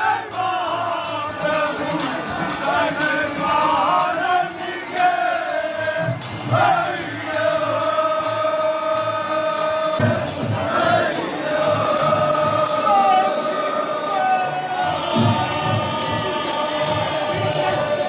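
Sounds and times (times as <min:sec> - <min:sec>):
group singing in unison: 0:00.0 - 0:18.0
sharp regular beats: 0:05.6 - 0:18.0.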